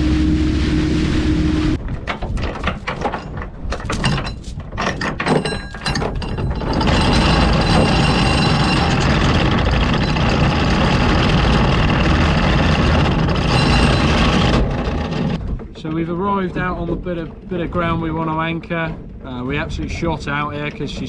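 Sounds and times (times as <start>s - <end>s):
motor boat engine drone: 0.0s - 2.2s, 6.7s - 15.8s
wind and water noise: 0.0s - 21.0s
irregular knocks and clatter: 1.8s - 21.0s.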